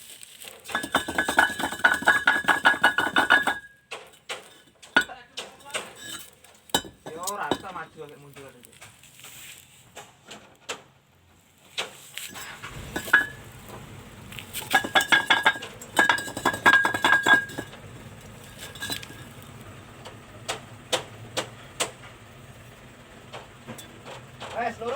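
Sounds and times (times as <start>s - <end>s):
bricks clinking together: 0.3s - 9.1s, 11.8s - 19.6s.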